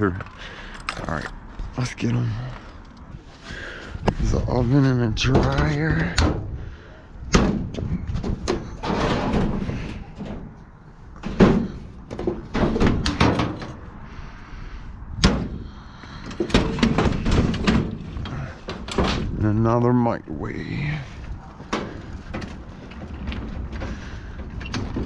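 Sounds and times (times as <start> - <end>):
sheet metal bangs and clanks: 7.3 - 10.6, 11.2 - 13.8, 15.2 - 19.4.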